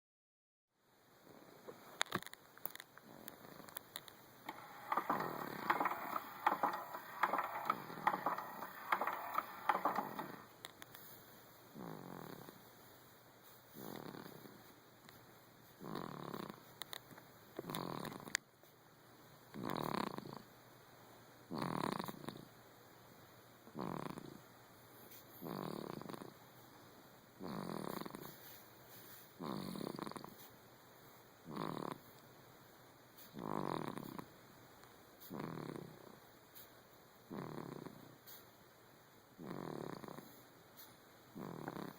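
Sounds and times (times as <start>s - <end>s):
baby snoring: 41.4s - 41.9s.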